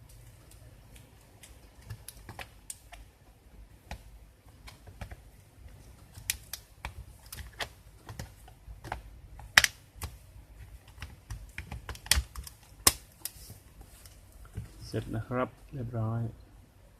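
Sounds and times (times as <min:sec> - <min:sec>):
plastic parts clicking and tapping: 0:00.0 - 0:03.1, 0:03.8 - 0:13.4.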